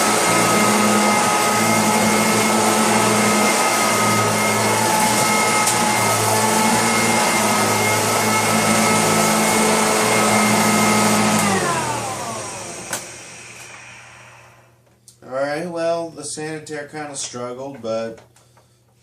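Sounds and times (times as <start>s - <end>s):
vacuum cleaner motor whine: 0.0s - 14.8s.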